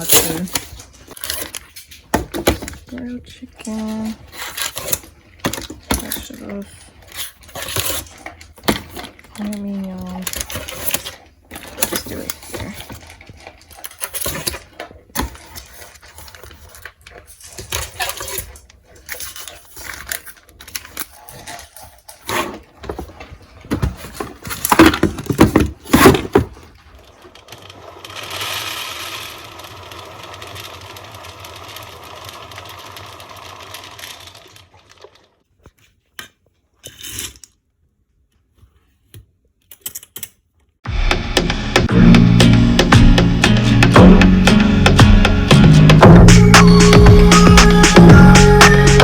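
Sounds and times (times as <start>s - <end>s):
rustling of food packaging: 0.0s - 31.1s
dry dog food pouring: 26.0s - 35.4s.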